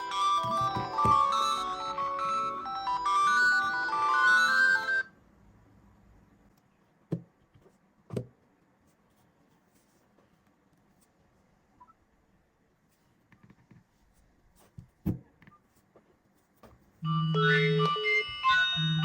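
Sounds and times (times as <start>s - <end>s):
mobile phone ringtone: 0.0s - 5.1s, 17.0s - 19.0s.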